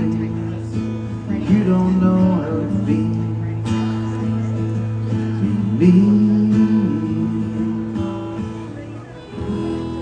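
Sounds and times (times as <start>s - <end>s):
acoustic guitar strumming: 0.0s - 10.0s.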